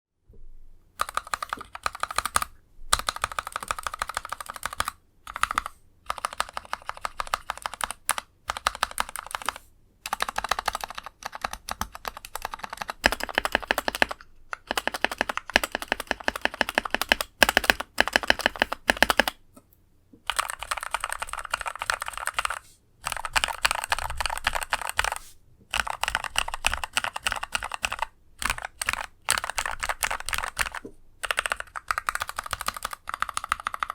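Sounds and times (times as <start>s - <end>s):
mechanical keyboard typing: 1.0s - 19.4s, 20.3s - 33.9s.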